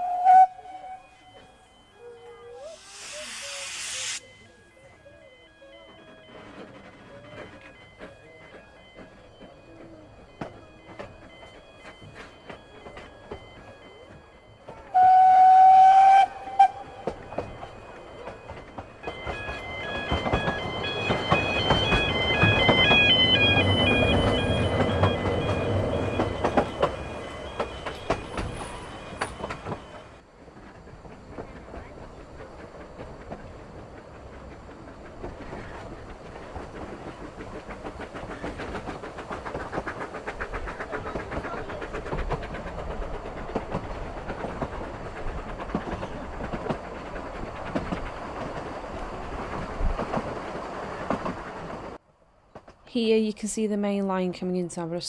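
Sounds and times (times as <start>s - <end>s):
railway carriage rumble: 0.0s - 55.0s
wheels clacking over rail joints: 16.4s - 52.8s.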